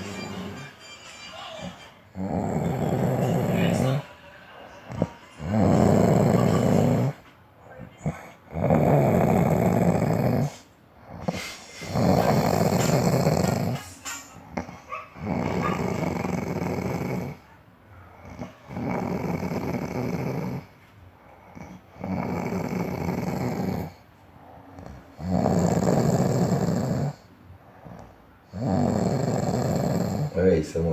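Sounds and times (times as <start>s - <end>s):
person snoring: 0.0s - 0.8s, 2.2s - 4.1s, 4.9s - 7.2s, 8.0s - 13.8s, 14.5s - 17.4s, 18.3s - 20.7s, 21.5s - 24.0s, 24.8s - 27.3s, 28.6s - 30.5s
soft breathing: 10.4s - 13.8s.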